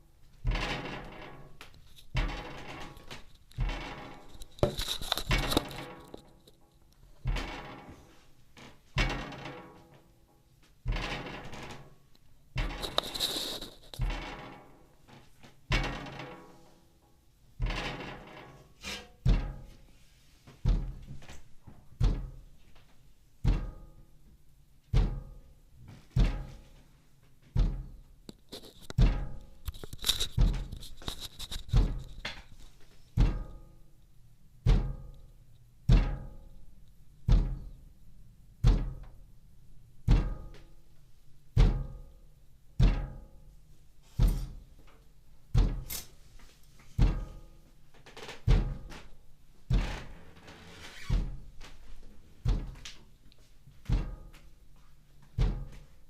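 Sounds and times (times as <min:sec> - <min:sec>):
heavy knocks on a window: 0:19.2 - 0:19.8, 0:20.6 - 0:22.6, 0:23.4 - 0:24.0, 0:24.9 - 0:25.4, 0:26.1 - 0:26.6, 0:27.5 - 0:28.1, 0:31.5 - 0:32.2, 0:33.2 - 0:33.6, 0:34.6 - 0:35.1, 0:35.9 - 0:36.4, 0:37.3 - 0:37.8, 0:38.6 - 0:39.2, 0:40.1 - 0:40.6, 0:41.5 - 0:42.1, 0:45.5 - 0:45.9, 0:46.9 - 0:47.5, 0:48.4 - 0:49.0, 0:51.1 - 0:51.6, 0:52.4 - 0:52.9, 0:53.8 - 0:54.3, 0:55.3 - 0:55.9.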